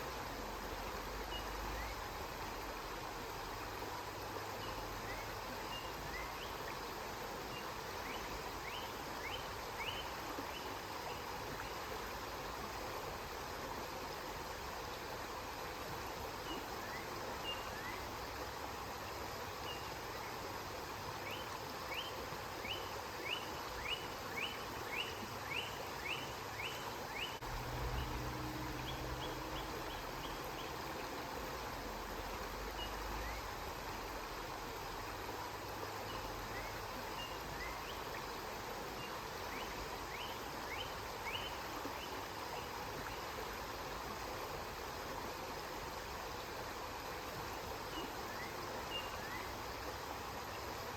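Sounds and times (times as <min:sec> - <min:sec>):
river water flowing: 0:00.0 - 0:50.9
bird chirping: 0:22.7 - 0:30.8.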